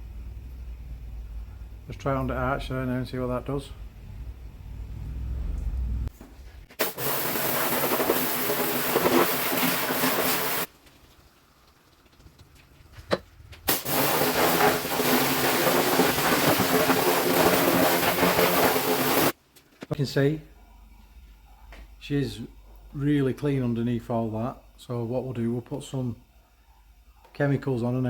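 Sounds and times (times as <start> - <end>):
blasting gun hissing: 6.8 - 10.7, 13.7 - 19.4.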